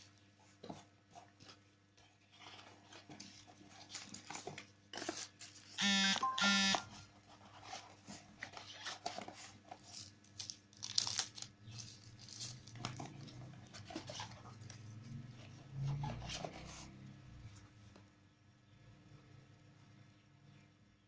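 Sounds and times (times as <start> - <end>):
packaging rustling and tearing: 2.2 - 5.8, 6.9 - 14.8.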